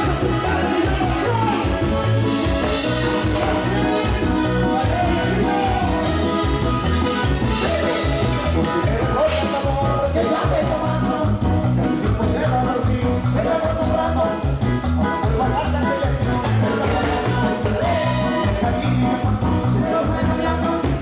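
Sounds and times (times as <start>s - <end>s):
latin dance music: 0.0s - 21.0s.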